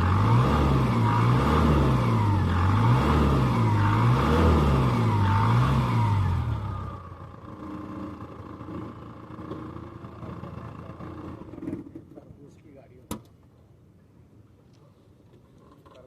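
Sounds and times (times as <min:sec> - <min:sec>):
diesel engine revving: 0:00.0 - 0:11.5.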